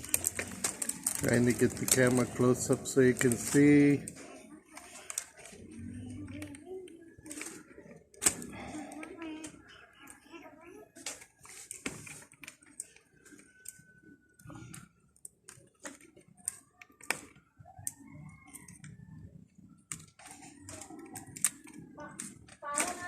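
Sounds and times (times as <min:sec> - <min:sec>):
dry leaves clicking and crackling: 0:00.0 - 0:04.2.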